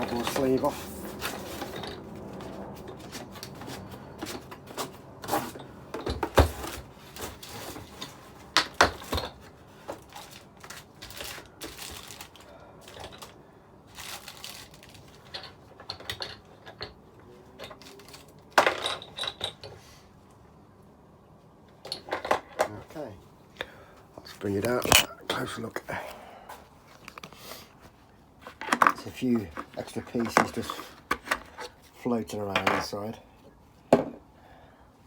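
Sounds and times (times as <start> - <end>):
cardboard and case rustling: 0.0 - 15.4, 27.0 - 31.9.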